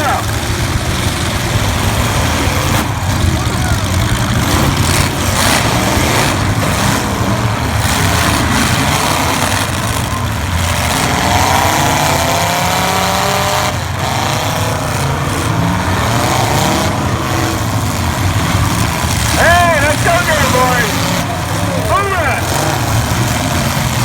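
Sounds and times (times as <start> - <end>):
car engines revving: 0.0 - 24.0.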